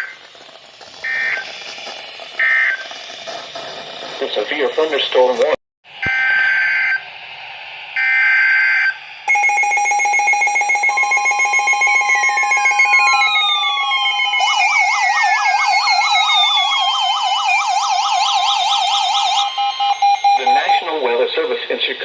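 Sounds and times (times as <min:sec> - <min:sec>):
warbling data tones: 0:00.0 - 0:07.1, 0:08.0 - 0:21.0
fast warbling siren tone: 0:01.0 - 0:01.5, 0:02.4 - 0:03.0, 0:06.0 - 0:07.0, 0:08.0 - 0:20.9
falling siren-like sweeps: 0:07.8 - 0:20.9
steady attention tones: 0:19.2 - 0:21.1.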